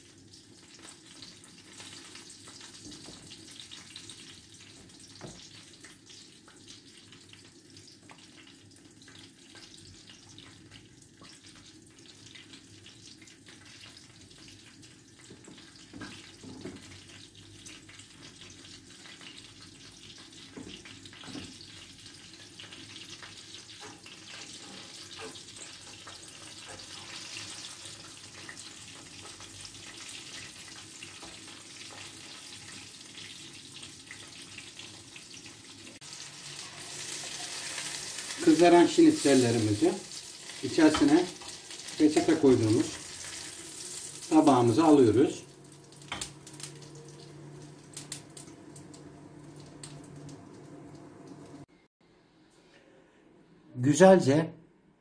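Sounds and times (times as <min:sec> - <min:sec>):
chicken frying in hot oil: 0:00.0 - 0:51.8.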